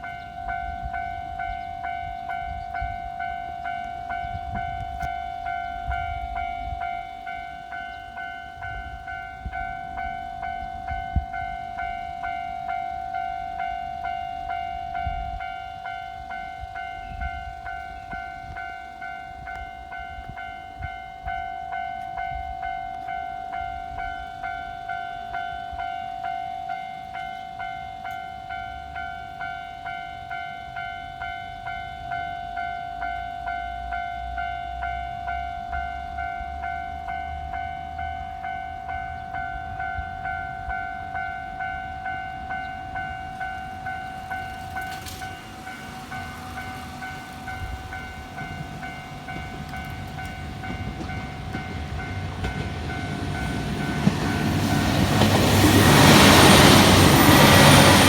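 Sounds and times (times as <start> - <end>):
train passing: 0.0 - 58.0
level crossing bell ringing: 36.8 - 58.0.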